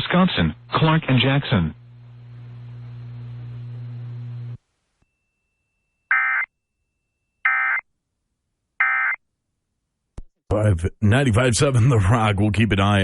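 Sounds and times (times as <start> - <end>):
steady low hum: 0.0 - 5.3.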